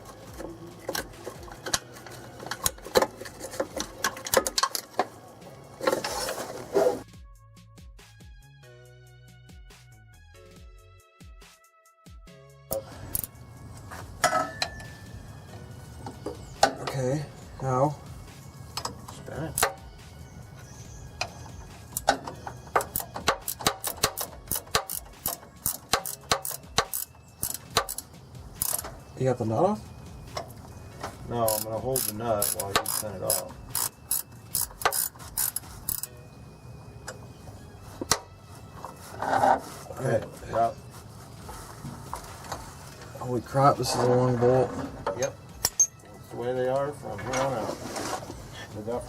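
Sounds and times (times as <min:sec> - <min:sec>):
music: 0:00.0 - 0:49.0
metallic tool clicks and clanks: 0:00.9 - 0:05.0, 0:21.2 - 0:29.0, 0:31.5 - 0:36.2, 0:45.1 - 0:46.1.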